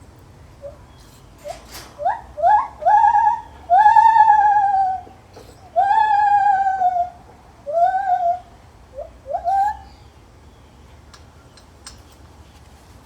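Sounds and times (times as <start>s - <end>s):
gibbon whooping hoots: 2.0s - 9.9s.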